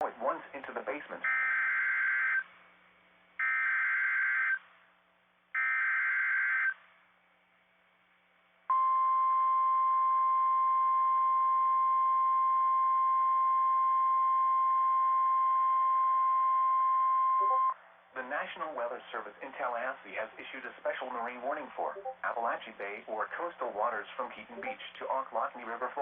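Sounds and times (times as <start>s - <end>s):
steady warning alarm tone: 1.2s - 2.5s, 3.4s - 4.7s, 5.6s - 6.8s, 8.7s - 17.8s.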